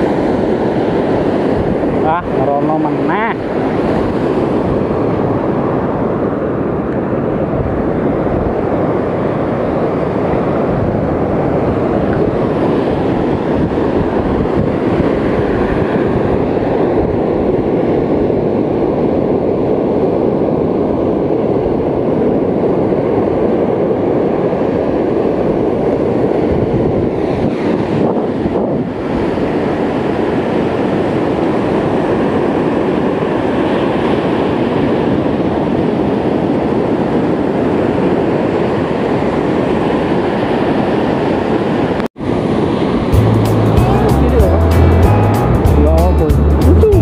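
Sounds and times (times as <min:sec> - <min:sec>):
wind buffeting microphone: 0:00.0 - 0:45.6
ocean surf on beach: 0:00.0 - 0:47.0.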